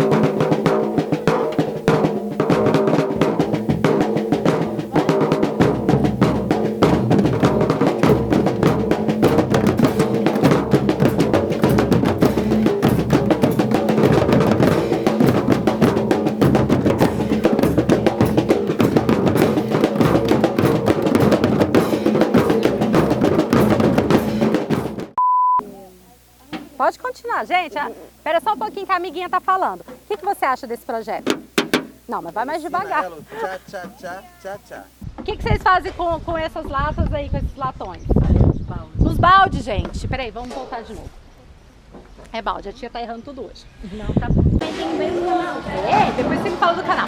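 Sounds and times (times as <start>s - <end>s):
percussion group drumming on cans: 0.0s - 25.2s, 31.1s - 34.6s.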